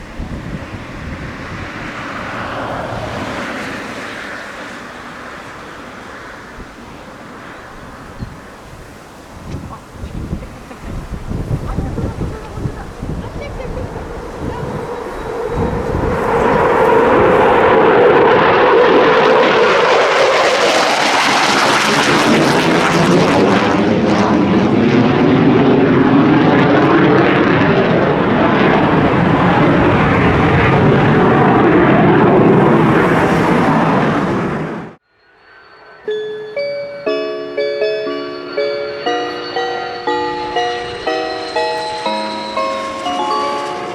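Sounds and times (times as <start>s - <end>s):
jet roaring on takeoff: 0.0s - 43.9s
music: 36.1s - 43.9s.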